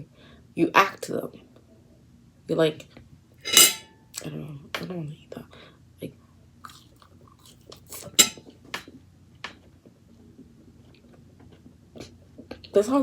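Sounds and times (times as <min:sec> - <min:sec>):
mouth crunching food: 0:06.6 - 0:08.2.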